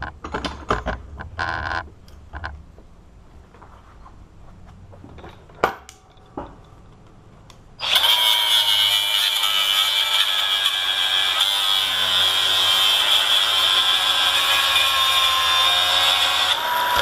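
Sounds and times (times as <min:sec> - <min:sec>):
power tool whining: 0:07.8 - 0:17.0.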